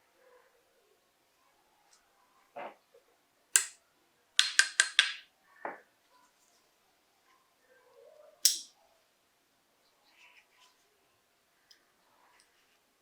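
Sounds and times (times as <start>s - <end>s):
pistol parts clicking: 3.6s - 3.8s, 4.4s - 5.2s, 8.4s - 8.7s.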